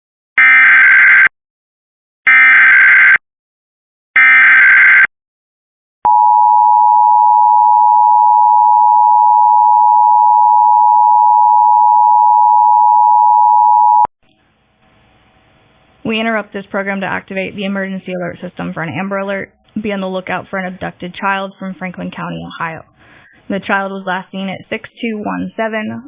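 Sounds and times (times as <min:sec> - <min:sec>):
steady attention tone: 0:06.1 - 0:14.1.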